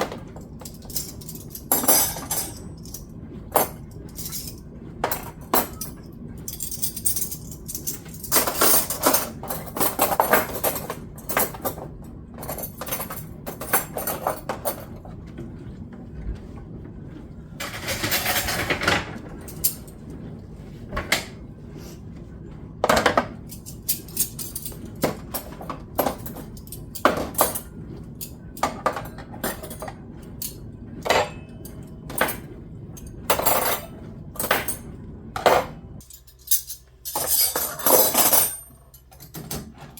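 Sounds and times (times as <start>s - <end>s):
dishes and cutlery clattering: 0.0s - 3.0s, 6.6s - 15.0s, 31.1s - 32.5s, 35.4s - 39.9s.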